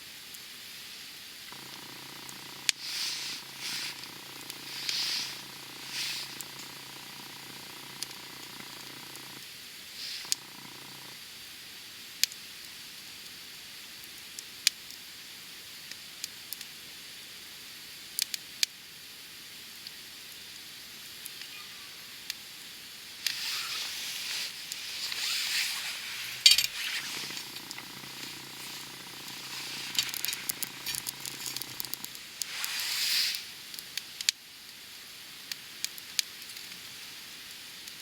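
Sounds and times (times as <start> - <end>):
logs hissing and sizzling: 0.7 - 11.2, 21.2 - 34.4
fire crackling and popping: 1.5 - 11.2, 22.3 - 38.0
faint low hum: 23.1 - 32.7.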